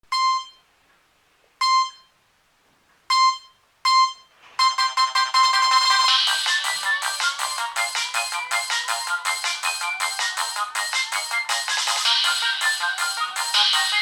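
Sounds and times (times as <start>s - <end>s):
electronic phone beeps: 0.1s - 0.6s, 1.6s - 2.1s, 3.1s - 7.2s
synthesized ringtone melody: 3.1s - 14.0s.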